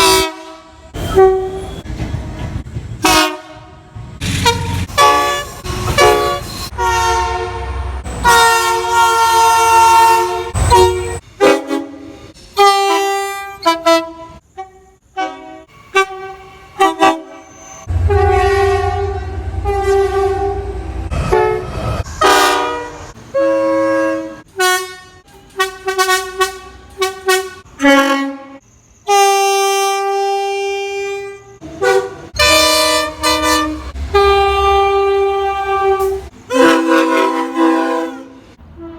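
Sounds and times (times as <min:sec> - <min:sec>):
train air horn blasts: 0:00.0 - 0:01.8, 0:03.0 - 0:38.9
low rumble: 0:17.9 - 0:22.1.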